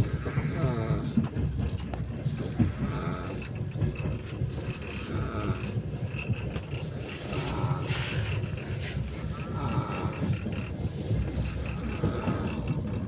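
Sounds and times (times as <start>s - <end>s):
steady low train rumble: 0.0s - 13.0s
man snoring: 9.2s - 10.4s.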